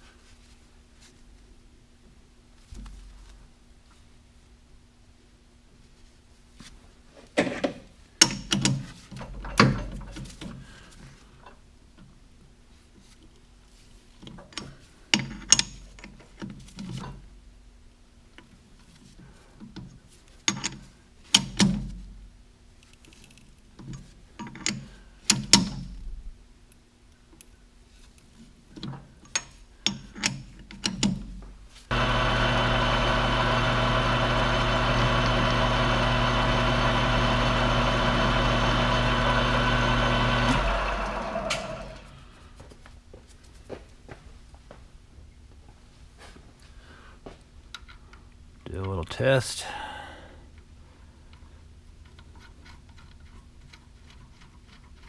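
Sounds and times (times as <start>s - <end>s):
electric machine motor running: 31.9s - 42.2s.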